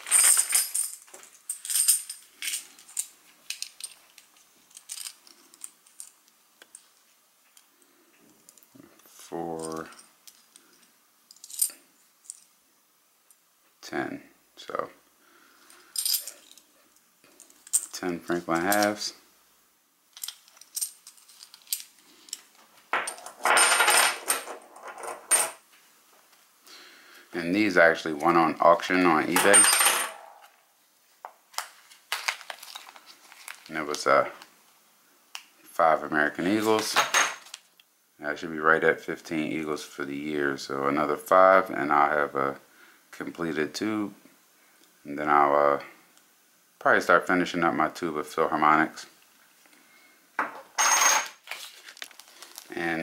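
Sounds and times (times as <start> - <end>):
coins clicking and clinking: 0.0 - 6.2, 20.2 - 25.6, 29.4 - 30.4
packaging crinkling: 31.6 - 33.7, 51.4 - 52.7.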